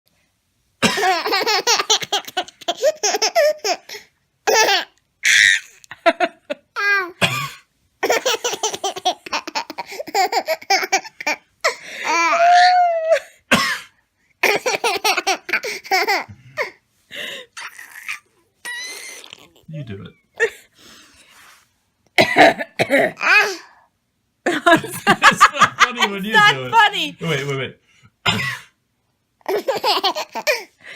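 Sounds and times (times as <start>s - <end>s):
baby laughing: 0.8s - 7.2s, 8.0s - 11.4s, 14.4s - 16.7s, 17.6s - 19.7s, 29.4s - 30.7s
man coughing: 22.2s - 23.2s, 28.2s - 28.7s.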